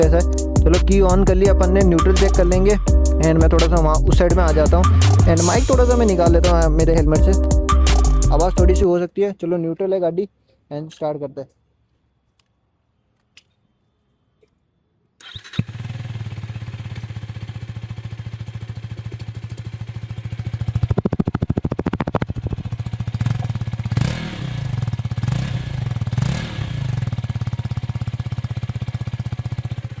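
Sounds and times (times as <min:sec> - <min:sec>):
motorcycle engine idling and revving: 0:15.2 - 0:30.0.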